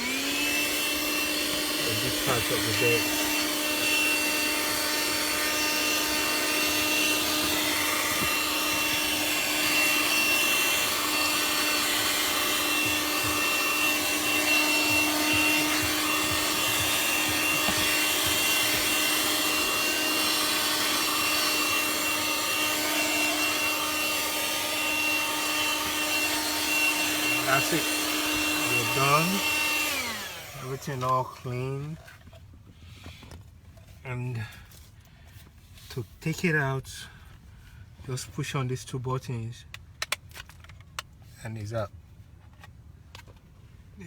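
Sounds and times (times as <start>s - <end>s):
handheld vacuum cleaner running: 0.0s - 32.0s.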